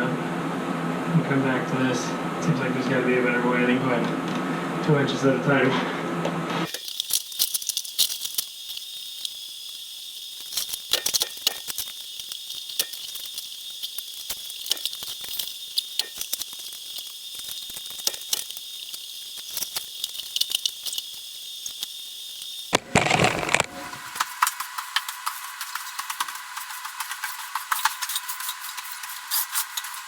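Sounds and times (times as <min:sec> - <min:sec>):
tile being chipped: 0:22.8 - 0:24.1.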